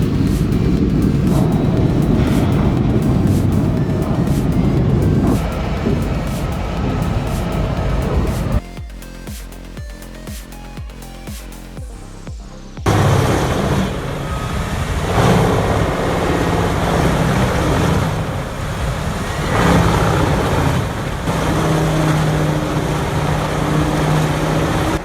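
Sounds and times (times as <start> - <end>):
diesel engine drone: 0.0 - 25.0
loud grinding: 12.9 - 25.0.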